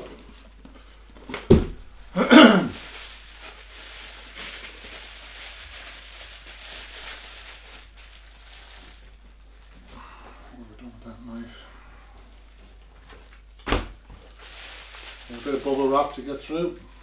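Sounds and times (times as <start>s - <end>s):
packaging rustling: 0.0s - 10.1s, 14.1s - 17.0s
person clearing throat: 2.1s - 2.8s.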